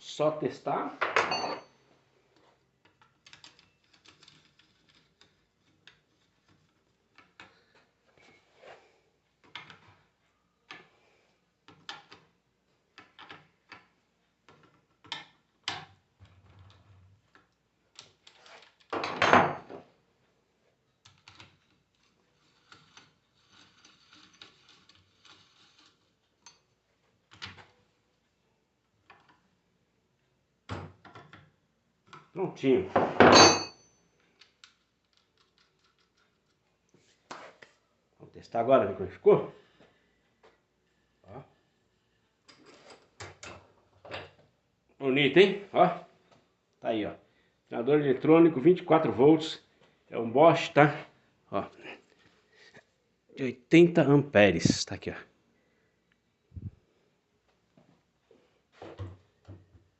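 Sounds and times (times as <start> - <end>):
clicks of metal parts and tools: 21.0 - 27.7, 42.4 - 44.4.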